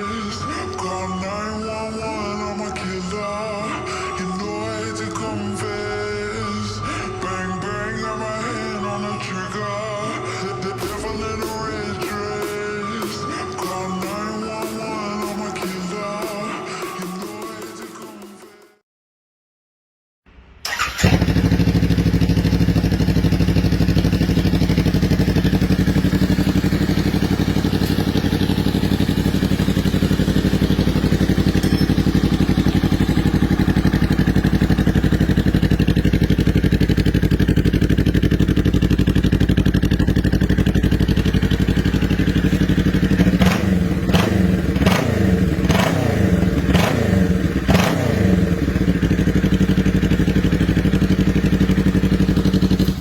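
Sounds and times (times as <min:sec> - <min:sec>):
motorcycle engine idling: 0:20.7 - 0:53.0.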